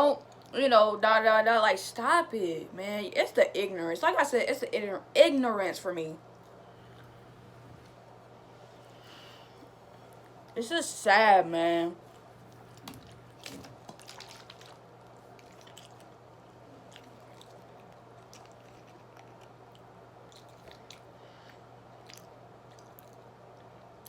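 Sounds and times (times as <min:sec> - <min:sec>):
steady low hum: 0:00.0 - 0:24.0
person chewing food: 0:12.4 - 0:24.0.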